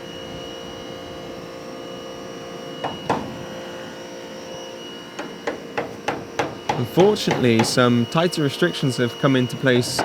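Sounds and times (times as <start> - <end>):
machine humming: 0.0 - 10.0
sharp knocks: 2.8 - 3.4, 5.2 - 7.8.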